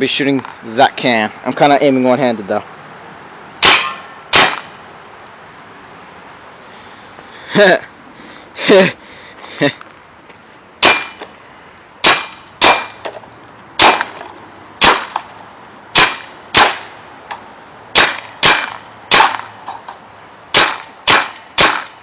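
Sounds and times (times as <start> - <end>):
paintball marker shots popping: 13.8 - 15.3.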